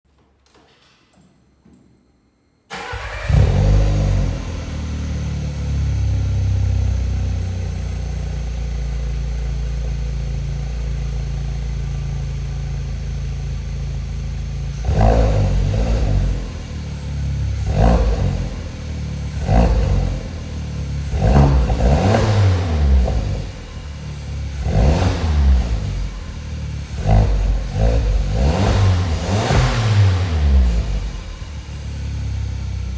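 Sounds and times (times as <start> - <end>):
engine revving: 2.7 - 8.1, 14.7 - 32.9
car engine starting and idling: 2.7 - 32.9.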